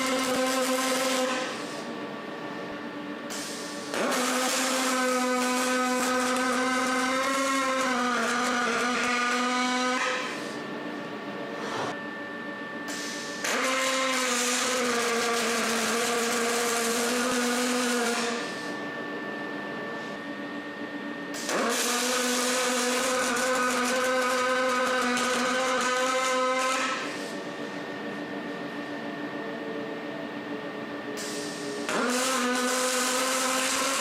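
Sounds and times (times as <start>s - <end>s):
power tool motor whining: 0.0s - 1.6s, 3.9s - 10.4s, 13.4s - 18.6s, 21.4s - 27.2s, 31.9s - 34.0s.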